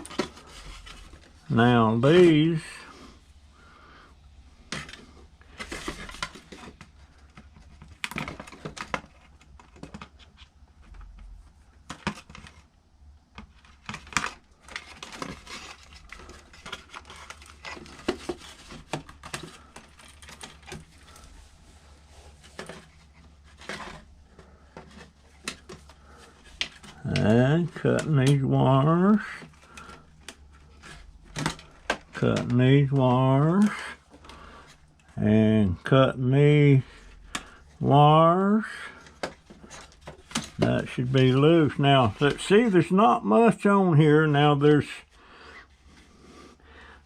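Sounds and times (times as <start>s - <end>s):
rustling: 0.0s - 4.0s, 13.5s - 32.6s.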